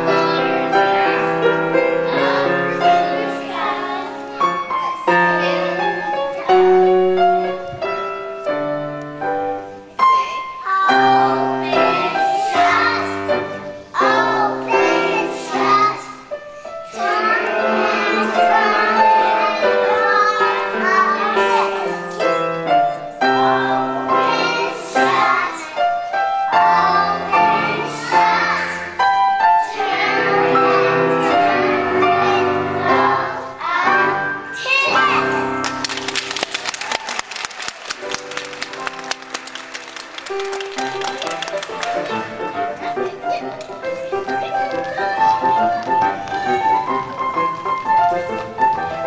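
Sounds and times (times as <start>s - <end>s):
children singing: 0.0s - 7.4s, 10.0s - 35.8s
piano accompaniment: 0.0s - 49.0s.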